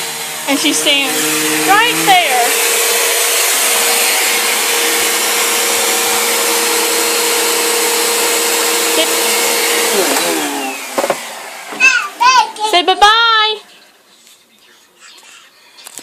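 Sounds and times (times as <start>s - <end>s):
vacuum motor winding down: 0.0s - 12.2s
vacuum cleaner running: 0.0s - 13.6s.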